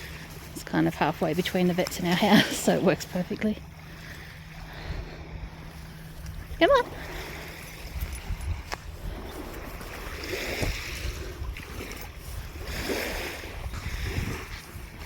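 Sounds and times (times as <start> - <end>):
wind rumbling on microphone: 0.0 - 15.0.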